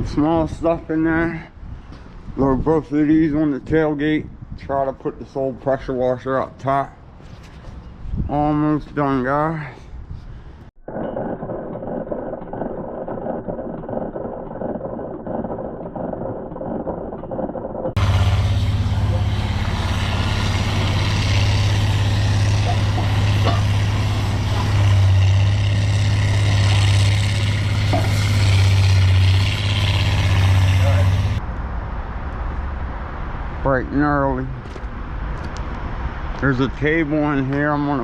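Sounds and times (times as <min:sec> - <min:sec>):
truck engine running: 0:17.9 - 0:31.4.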